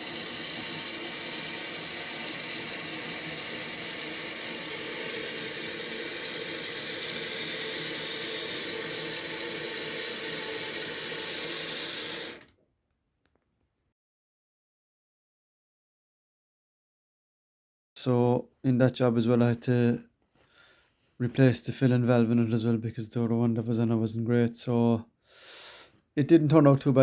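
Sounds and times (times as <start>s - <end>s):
water rushing into toilet cistern: 0.0s - 12.5s.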